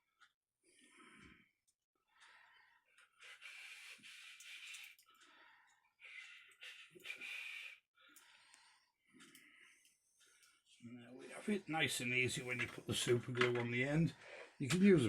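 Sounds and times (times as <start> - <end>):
faint breathing: 0.7 - 11.4, 14.1 - 14.6.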